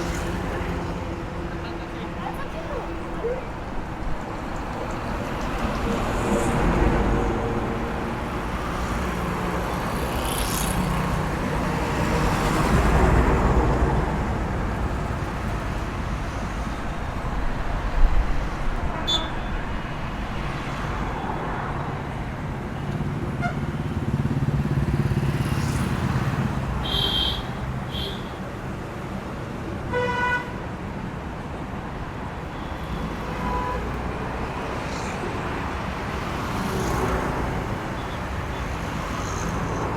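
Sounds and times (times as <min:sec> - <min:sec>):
vehicles driving by: 0:00.0 - 0:39.9
car horn toots: 0:19.1 - 0:19.5, 0:26.8 - 0:28.4.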